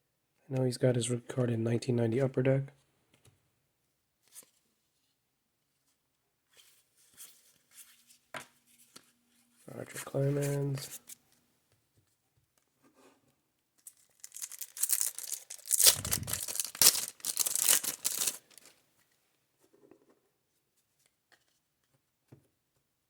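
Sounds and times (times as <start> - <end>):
card packaging rustling: 13.8 - 18.8.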